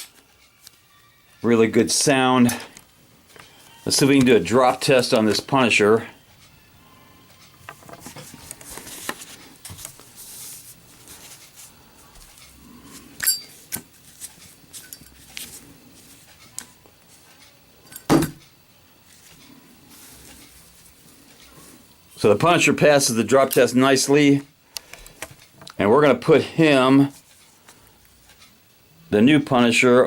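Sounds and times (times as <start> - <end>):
ringing metal clink: 13.2 - 13.6.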